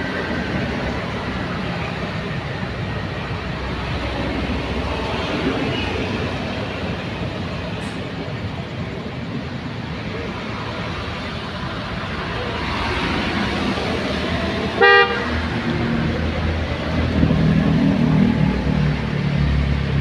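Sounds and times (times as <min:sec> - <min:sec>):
road traffic noise: 0:00.0 - 0:20.0
vehicle engine rumbling close by: 0:00.0 - 0:20.0
vehicle horn toot: 0:14.8 - 0:15.3.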